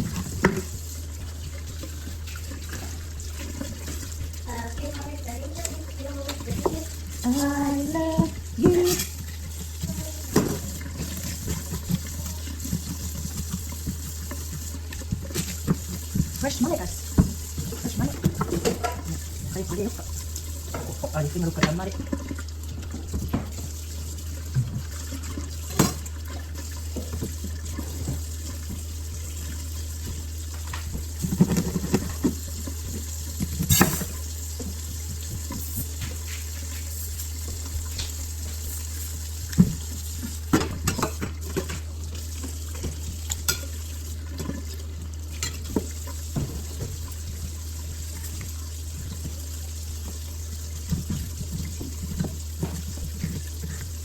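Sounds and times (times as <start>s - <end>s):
water running at sink: 0.0s - 54.0s
dishes and utensils clattering: 17.2s - 19.3s, 40.5s - 41.9s.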